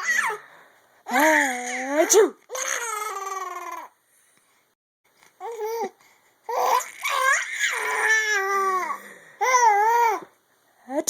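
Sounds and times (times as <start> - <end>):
baby babbling: 2.5 - 4.0, 5.4 - 10.3.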